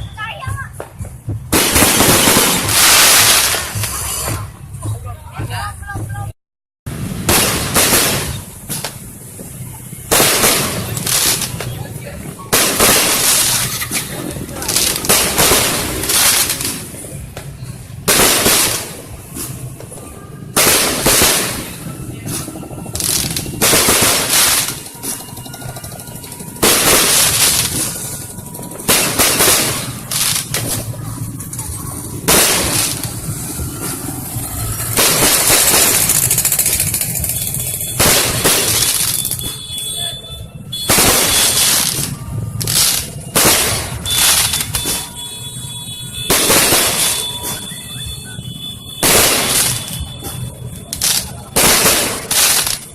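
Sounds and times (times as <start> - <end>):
fireworks bangs: 0.2 - 6.3, 6.9 - 52.9.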